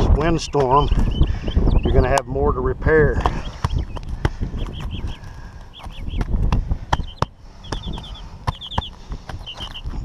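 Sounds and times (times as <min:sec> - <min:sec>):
small bird chirping: 0:00.4 - 0:02.4, 0:03.4 - 0:10.0
clicks and taps on shingles: 0:03.2 - 0:09.9.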